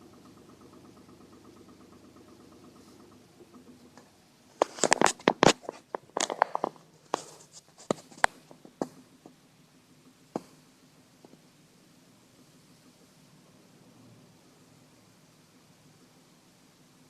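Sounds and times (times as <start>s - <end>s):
small car engine idling: 0.0s - 17.0s
sharp clicks and knocks: 0.2s - 9.4s.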